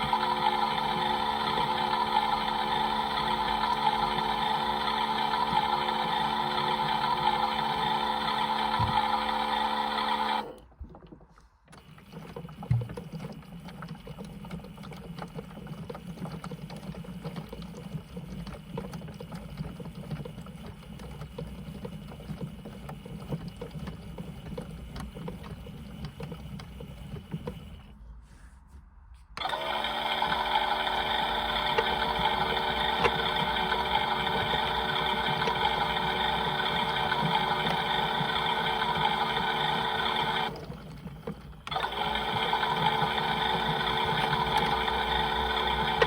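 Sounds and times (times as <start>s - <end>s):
toy motor humming and rattling: 29.4s - 40.6s.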